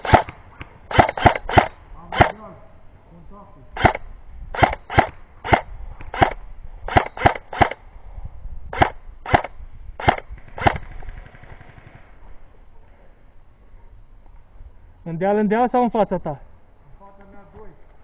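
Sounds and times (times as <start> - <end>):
airsoft gun firing single shots: 0.0 - 2.5, 3.8 - 7.8, 8.7 - 12.0.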